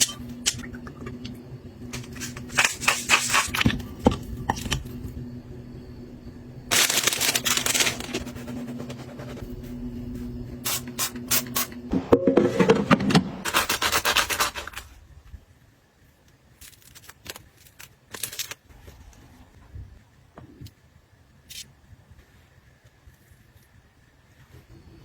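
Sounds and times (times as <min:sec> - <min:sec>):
low steady hum: 0:00.0 - 0:14.0
objects rubbing and scraping: 0:06.7 - 0:10.4.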